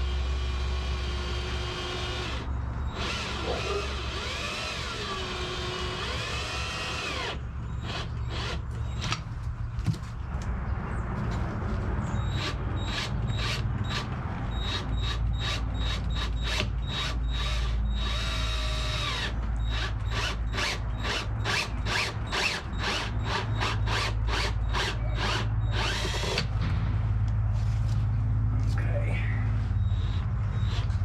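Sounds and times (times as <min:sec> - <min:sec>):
power drill running in bursts: 0:00.0 - 0:08.6, 0:14.6 - 0:26.4.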